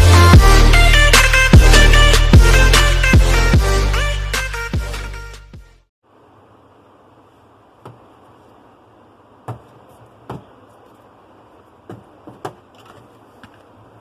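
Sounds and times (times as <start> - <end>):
steady background hiss: 6.0 - 14.0.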